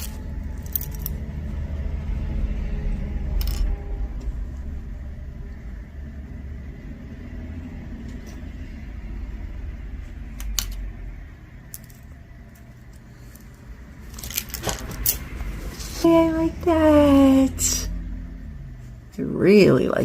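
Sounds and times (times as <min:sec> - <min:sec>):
jewelry clicking and clinking: 0:00.0 - 0:01.4, 0:03.3 - 0:03.8, 0:10.3 - 0:11.0, 0:11.6 - 0:15.5
low background hum: 0:00.0 - 0:20.0.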